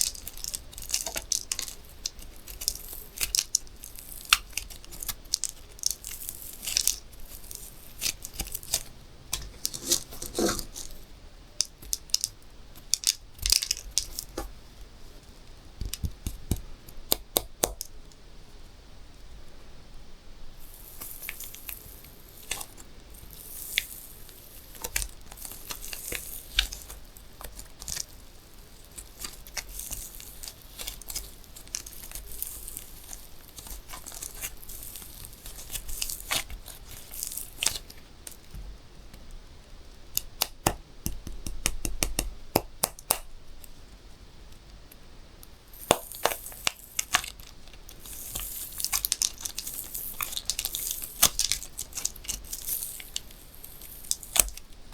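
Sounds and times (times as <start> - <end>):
balloon rubber rustling: 9.4 - 11.0.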